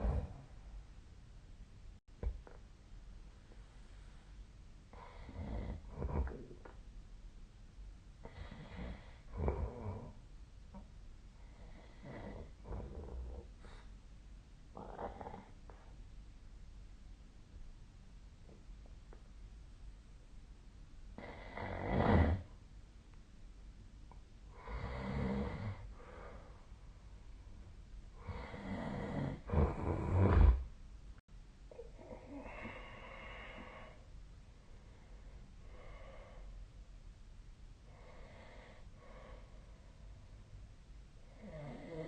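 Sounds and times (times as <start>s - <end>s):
person snoring: 0.0s - 0.4s, 24.5s - 26.5s, 28.2s - 30.7s, 41.3s - 42.0s.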